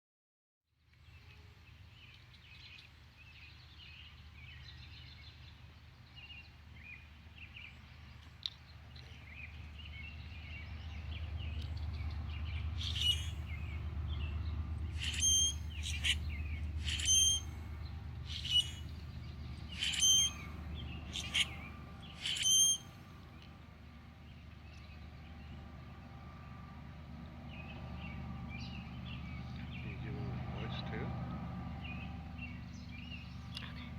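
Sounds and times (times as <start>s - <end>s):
steady low rumble: 3.8s - 33.9s
loud sharp bird calls: 9.0s - 23.4s
flock of birds chattering: 15.0s - 17.5s, 18.3s - 22.8s.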